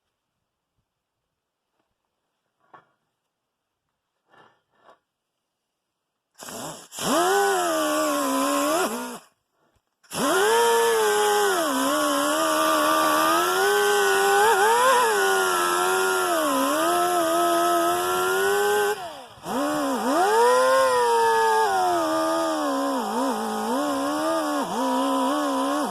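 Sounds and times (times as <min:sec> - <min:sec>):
electric power tool running: 0:06.4 - 0:09.2, 0:10.1 - 0:25.9.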